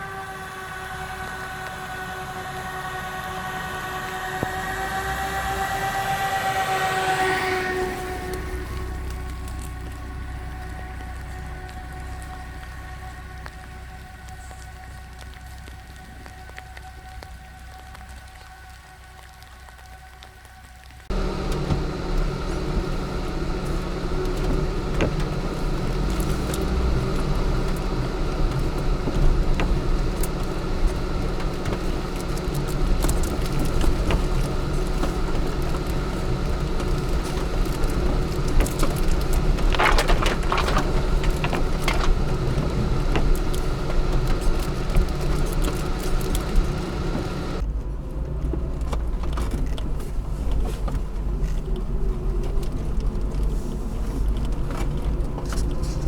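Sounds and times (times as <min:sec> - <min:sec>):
car engine running: 0:00.0 - 0:16.5, 0:21.1 - 0:56.0
vehicle clicks and rattles: 0:21.0 - 0:56.0.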